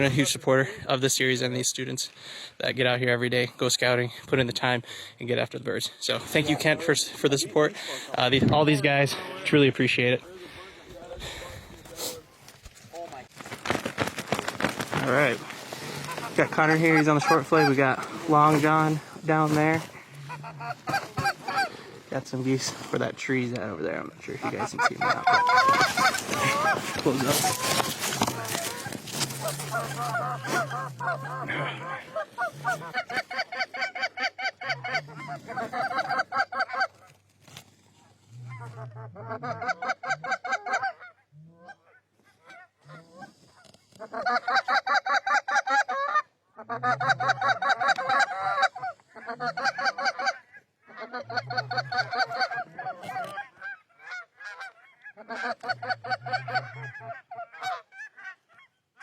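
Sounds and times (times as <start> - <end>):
goose honking and clucking: 15.0 - 59.0.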